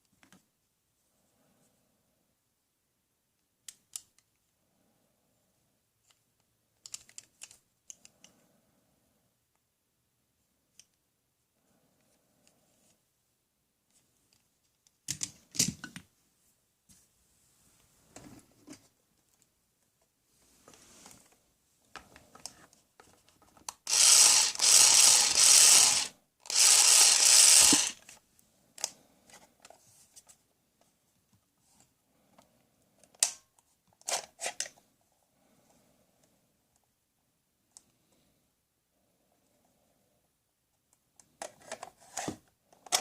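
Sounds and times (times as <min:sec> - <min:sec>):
plastic clicks: 0:06.8 - 0:08.4
toy power tool whirring: 0:23.8 - 0:28.1.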